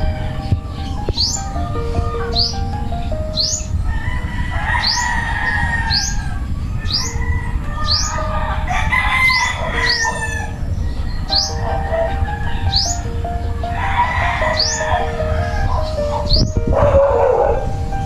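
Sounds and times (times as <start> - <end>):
music with rising chirp notes: 0.0 - 5.2, 7.1 - 18.0
rooster crowing: 3.8 - 12.9, 13.6 - 17.7.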